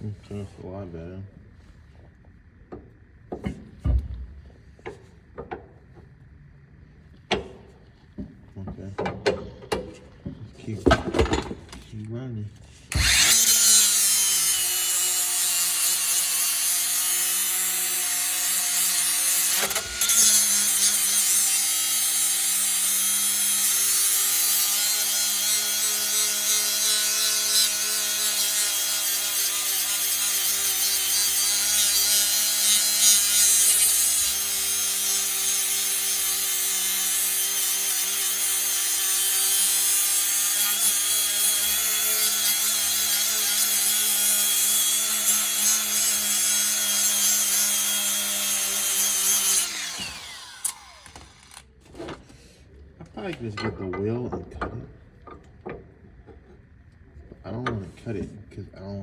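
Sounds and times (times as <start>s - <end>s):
power grinder grinding metal: 12.9s - 51.7s.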